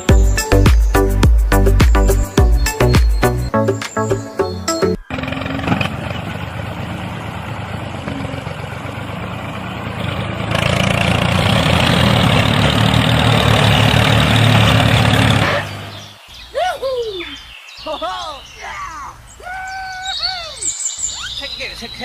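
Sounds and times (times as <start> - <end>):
engine idling: 5.1 - 16.0.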